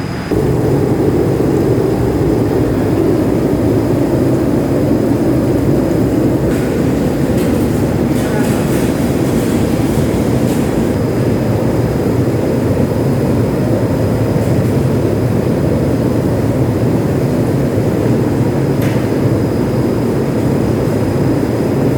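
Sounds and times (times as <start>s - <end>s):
machine motor hum: 0.0s - 12.8s
faint high whine: 0.0s - 13.6s.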